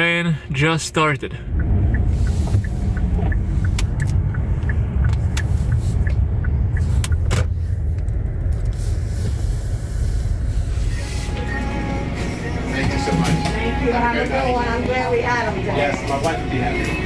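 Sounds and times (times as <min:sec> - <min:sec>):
car cabin low rumble: 0:00.0 - 0:17.0
faint regular ticking: 0:01.3 - 0:07.3.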